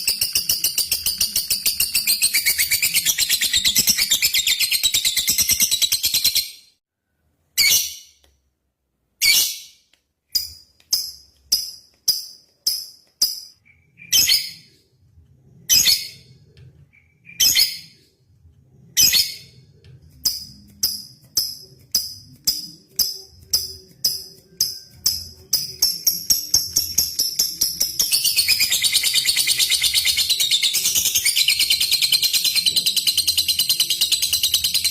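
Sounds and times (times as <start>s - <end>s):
lovebird ticking chirps: 20.1s - 34.9s.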